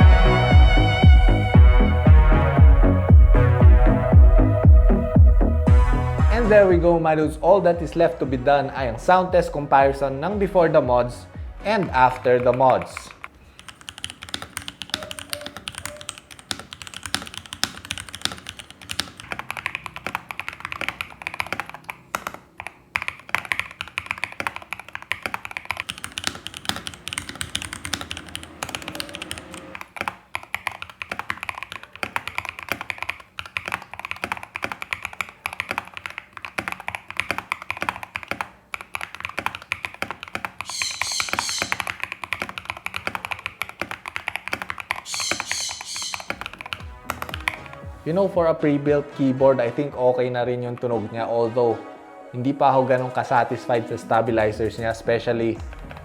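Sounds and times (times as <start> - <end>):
mechanical keyboard keys clacking: 12.3 - 45.2, 46.2 - 47.8.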